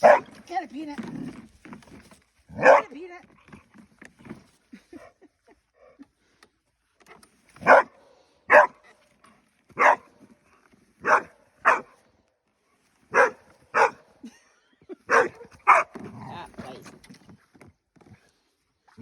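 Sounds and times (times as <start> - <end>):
dog barking: 0.0 - 0.3, 2.6 - 2.9, 7.6 - 8.8, 9.8 - 10.1, 11.0 - 11.9, 13.1 - 14.0, 15.1 - 15.9.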